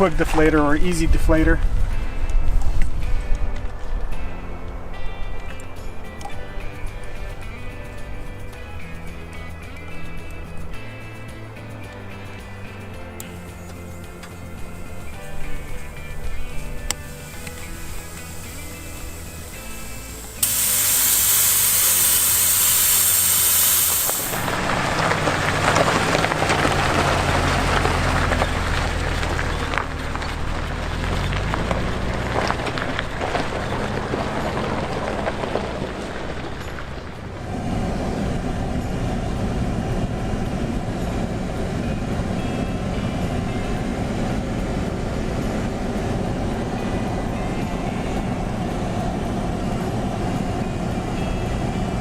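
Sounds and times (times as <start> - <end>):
tyres rumbling on unpaved road: 0.0 - 52.0
vehicle engine running: 0.0 - 52.0
tyres crackling over gravel: 13.4 - 37.6
air hissing out of tyre: 17.0 - 24.5.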